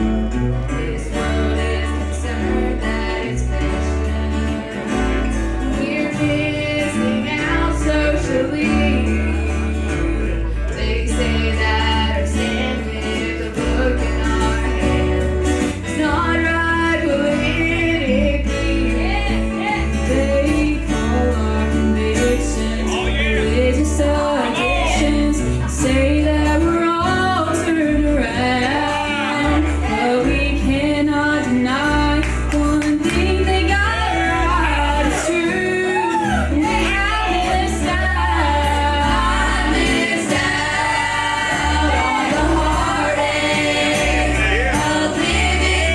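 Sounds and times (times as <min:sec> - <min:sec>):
group singing together: 0:00.0 - 0:45.9.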